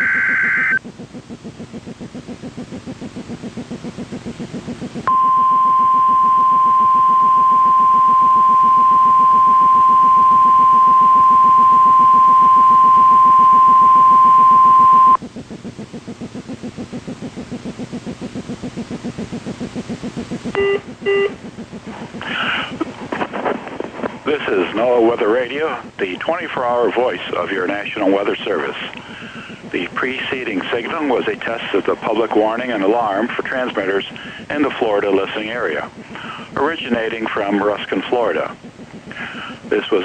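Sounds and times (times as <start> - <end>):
steady high alarm tone: 0.0 - 2.3, 4.6 - 15.2, 20.5 - 21.4
digital data bursts: 0.0 - 23.0, 24.2 - 40.0
rhythmic rubbing noise: 0.7 - 40.0.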